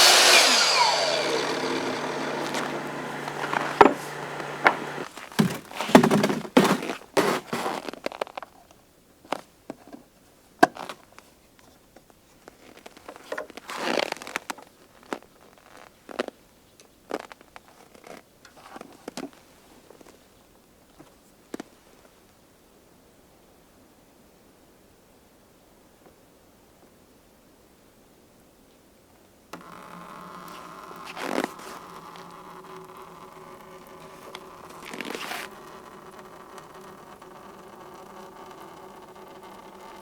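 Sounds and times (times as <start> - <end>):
steady mechanical hum: 0.0 - 5.6
irregular knocks and thunks: 2.8 - 6.8.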